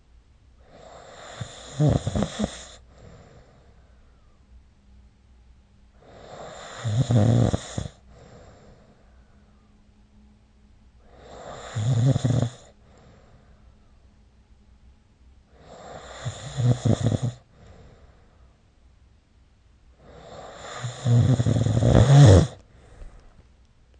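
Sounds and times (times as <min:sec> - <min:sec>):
person snoring: 0:00.6 - 0:02.8, 0:06.0 - 0:08.4, 0:11.1 - 0:12.8, 0:15.6 - 0:17.4, 0:20.0 - 0:22.6
quiet breathing: 0:00.6 - 0:05.1, 0:05.9 - 0:10.4, 0:11.0 - 0:14.4, 0:15.5 - 0:18.9, 0:19.9 - 0:23.7.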